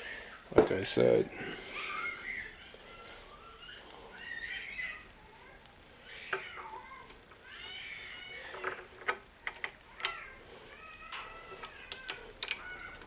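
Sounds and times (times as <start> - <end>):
small metal clicks: 8.5 - 10.3, 11.1 - 13.0.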